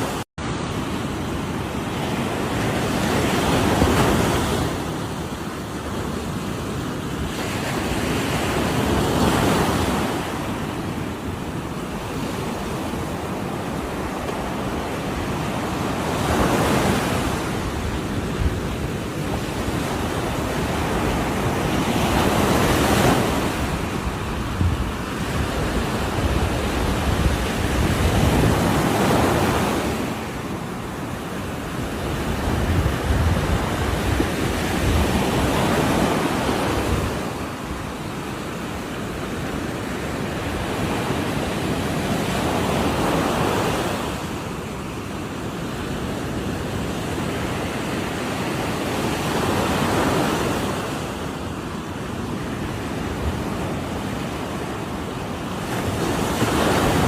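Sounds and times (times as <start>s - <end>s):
wind noise on microphone: 0.0s - 44.6s
ocean waves breaking on shore: 0.0s - 57.0s.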